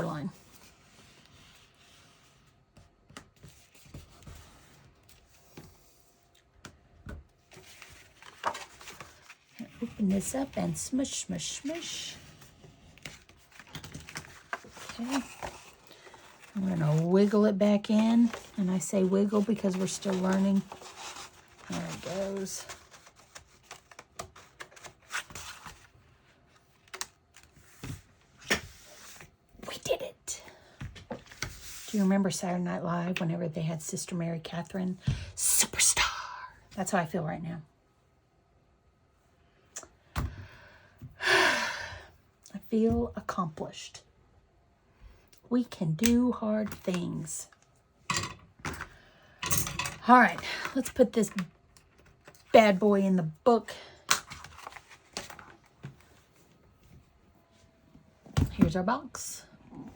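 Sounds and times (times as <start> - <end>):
paper and cardboard rustling: 7.4 - 11.0, 11.6 - 29.3, 54.2 - 56.5.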